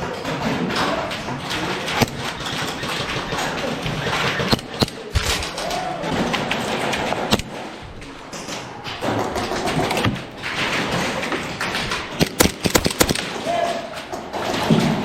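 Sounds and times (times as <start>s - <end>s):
background noise: 0.0s - 15.0s
airsoft gunfire: 1.7s - 5.5s, 7.0s - 7.7s, 12.1s - 13.6s.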